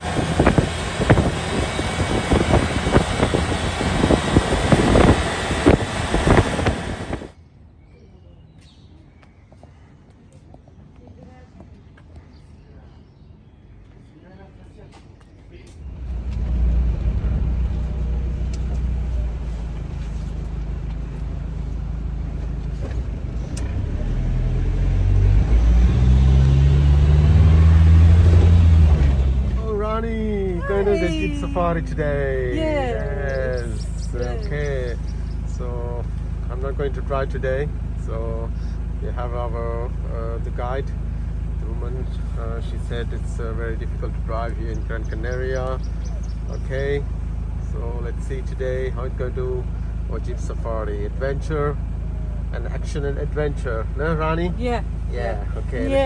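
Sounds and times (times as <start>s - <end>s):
vehicle driving rush: 0.0s - 7.4s, 15.8s - 56.0s
wind buffeting microphone: 0.0s - 7.4s.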